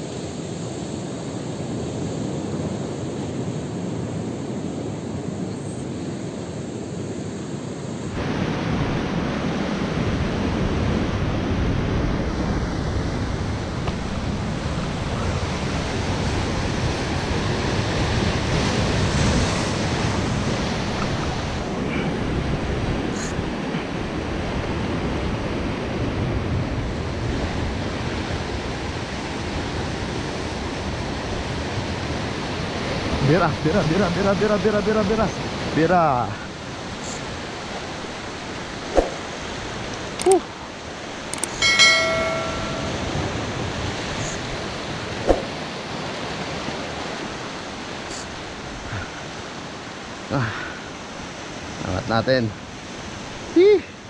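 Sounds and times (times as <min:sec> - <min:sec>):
wind rumbling on microphone: 0:08.0 - 0:33.7
sea surf washing: 0:08.2 - 0:54.0.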